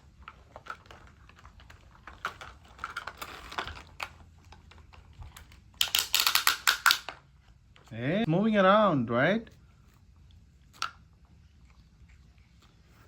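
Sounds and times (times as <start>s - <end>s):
stones rattling against toy bulldozer: 0.0s - 7.3s.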